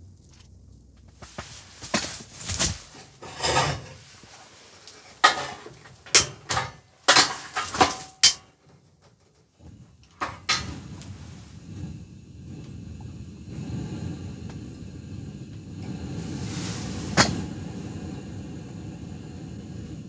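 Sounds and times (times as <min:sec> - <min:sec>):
objects knocking and clattering: 0:01.3 - 0:04.2, 0:05.0 - 0:09.5.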